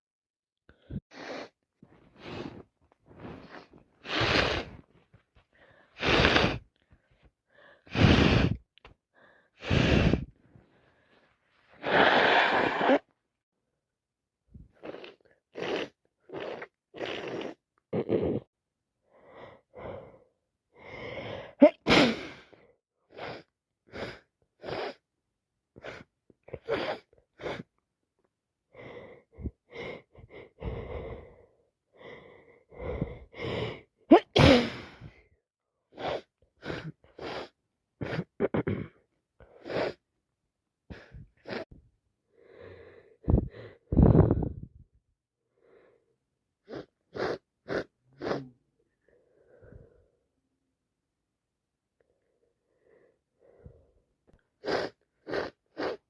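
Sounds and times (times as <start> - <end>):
gasps and sniffs: 0.8 - 4.9, 5.5 - 6.8, 7.6 - 8.7, 9.3 - 10.4, 11.8 - 13.1, 14.7 - 18.4, 21.2 - 25.0, 25.8 - 27.7, 35.9 - 38.7, 39.4 - 40.0, 40.9 - 41.7, 46.6 - 48.6, 54.4 - 56.0
woman sneezing: 21.6 - 22.4, 34.1 - 35.1.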